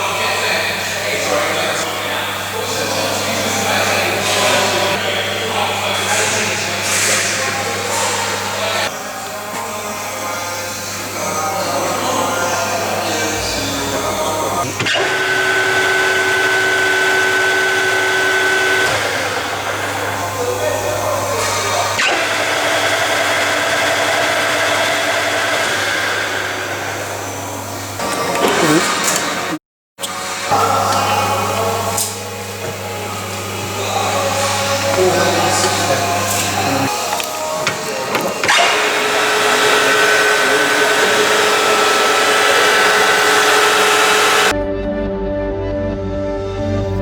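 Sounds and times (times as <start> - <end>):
lathe whirring and whining: 0.0 - 44.6.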